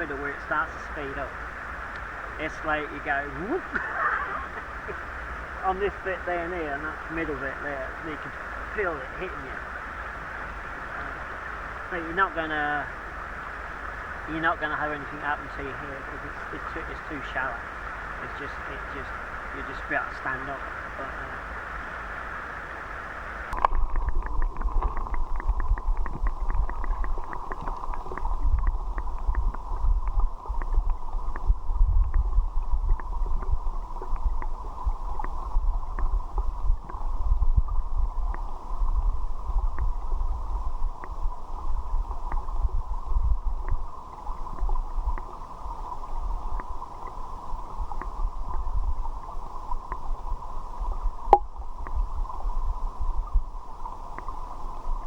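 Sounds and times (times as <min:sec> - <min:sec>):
small underwater clicks: 0:00.0 - 0:12.2, 0:22.7 - 0:55.0
underwater river current rumble: 0:00.0 - 0:55.0.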